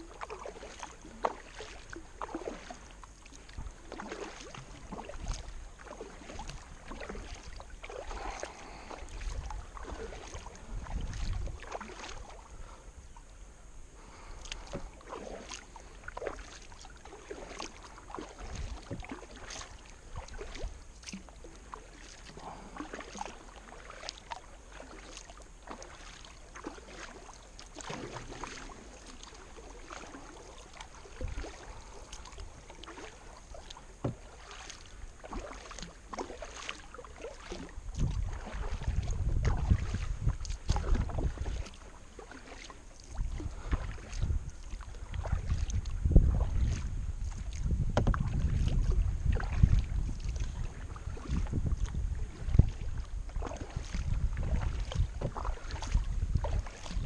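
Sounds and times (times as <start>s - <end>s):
paddle splashing in water: 0.0s - 57.0s
dull low thumps: 37.9s - 41.5s, 43.5s - 57.0s.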